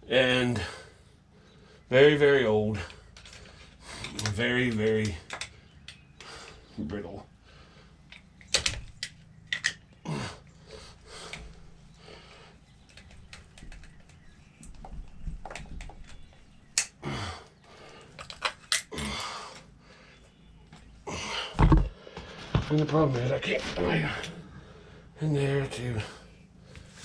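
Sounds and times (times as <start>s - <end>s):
hand tools and metal parts clicking: 3.1s - 6.6s, 18.0s - 19.7s.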